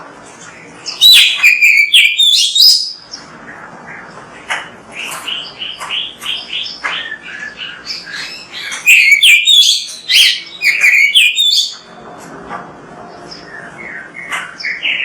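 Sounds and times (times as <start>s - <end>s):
bird singing rapid high phrases: 0.8s - 3.6s, 4.9s - 11.9s.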